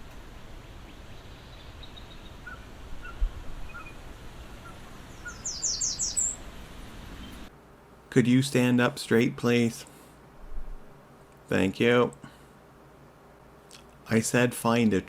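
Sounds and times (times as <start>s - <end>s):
low wind rumble: 0.0s - 7.5s, 10.3s - 11.1s
wild birds calling: 0.6s - 7.5s.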